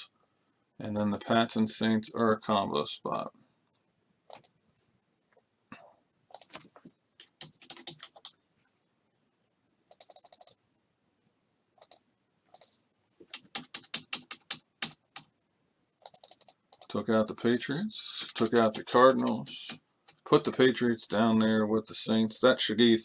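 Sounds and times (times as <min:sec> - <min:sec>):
keyboard typing: 0:04.3 - 0:04.6, 0:06.3 - 0:08.4, 0:09.9 - 0:10.6, 0:11.8 - 0:15.3, 0:16.0 - 0:17.0, 0:18.2 - 0:20.4.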